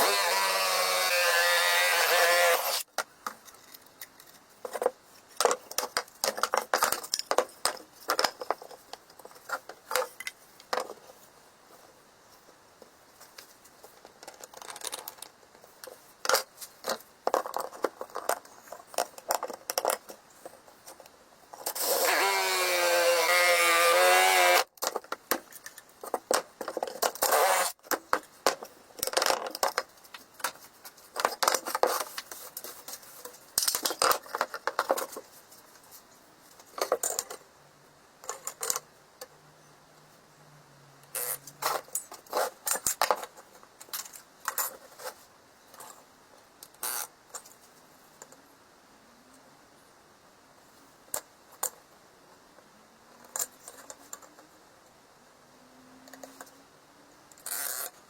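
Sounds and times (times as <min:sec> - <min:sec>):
small power tool whining: 0:00.0 - 0:02.8, 0:21.8 - 0:24.7.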